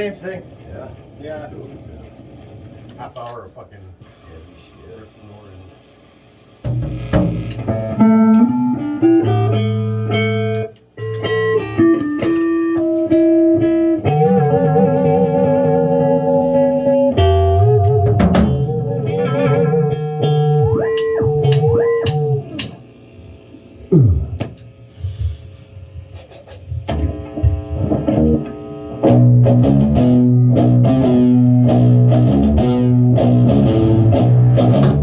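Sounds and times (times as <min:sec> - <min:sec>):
drum hits: 0:06.6 - 0:08.0, 0:17.8 - 0:18.9, 0:20.6 - 0:22.8, 0:23.9 - 0:25.4, 0:26.7 - 0:28.2, 0:33.2 - 0:35.0
electric guitar with string bends: 0:06.6 - 0:24.9, 0:26.0 - 0:35.0
rock band playing chords: 0:06.6 - 0:25.4, 0:26.8 - 0:35.0.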